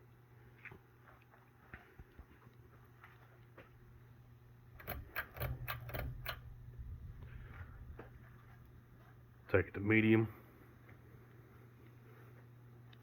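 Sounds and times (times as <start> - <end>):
ceiling fan motor hum: 1.8 - 13.0
sharp clicks and rattles: 4.7 - 6.8.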